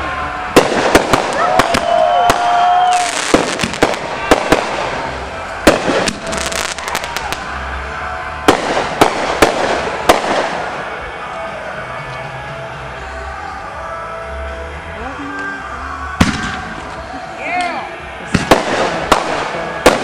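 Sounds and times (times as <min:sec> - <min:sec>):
fireworks bangs: 0:00.1 - 0:11.1, 0:16.2 - 0:16.9, 0:18.2 - 0:20.0.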